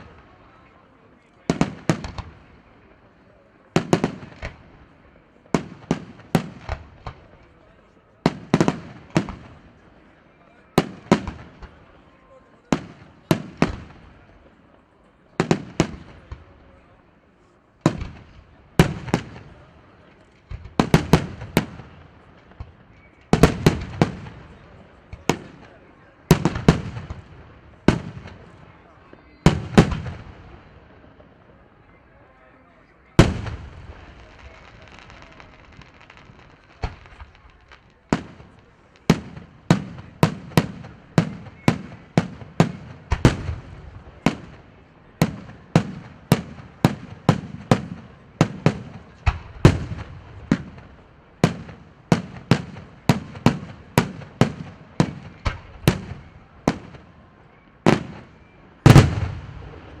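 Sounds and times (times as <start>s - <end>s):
heavy firework bangs: 1.5s - 2.6s, 3.7s - 7.6s, 8.2s - 9.9s, 10.8s - 11.8s, 17.8s - 31.2s, 33.2s - 57.1s, 57.9s - 60.0s
firework crackle: 33.2s - 57.0s, 58.0s - 60.0s.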